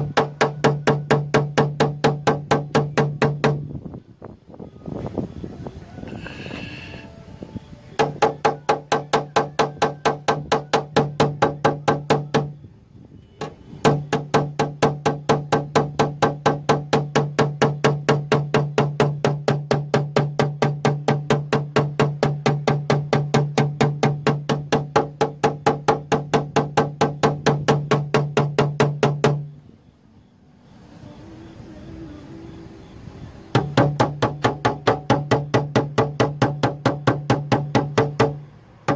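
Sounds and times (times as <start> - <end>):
hammer tapping on steel panel: 0.0 - 3.6, 8.0 - 12.5, 13.4 - 29.5, 33.5 - 38.9.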